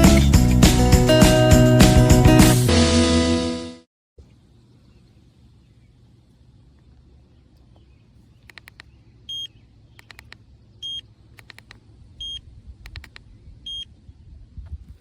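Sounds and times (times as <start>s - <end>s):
indicator clicks: 8.4s - 13.3s
turn signal beeping: 8.5s - 13.1s, 13.7s - 13.9s.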